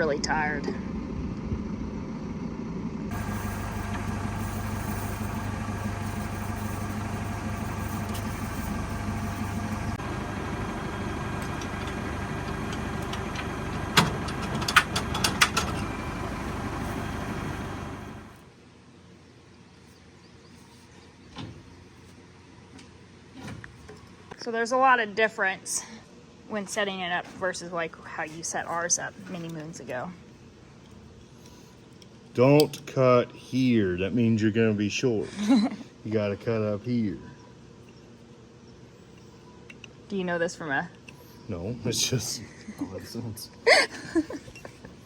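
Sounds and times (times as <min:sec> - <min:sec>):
vehicle engine running: 0:00.0 - 0:18.5
sharp clicks or clanks: 0:11.4 - 0:16.0.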